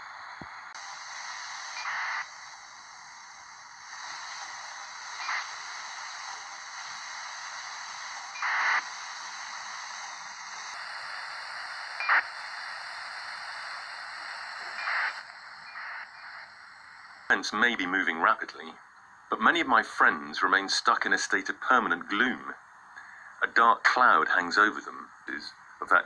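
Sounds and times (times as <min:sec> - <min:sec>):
radio static hiss: 0:00.0 - 0:26.0
bursts of radio noise: 0:00.8 - 0:02.3, 0:03.9 - 0:18.6.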